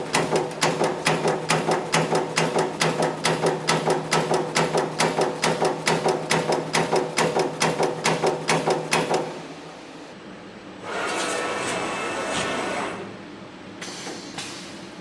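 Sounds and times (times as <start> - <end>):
punch press ram striking: 0.0 - 9.5
steady machine hum: 0.0 - 13.9.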